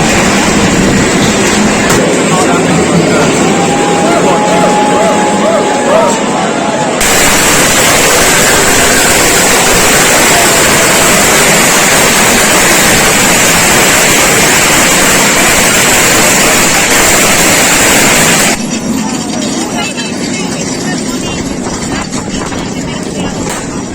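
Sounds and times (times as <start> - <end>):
loud hissing rush: 0.0 - 18.8.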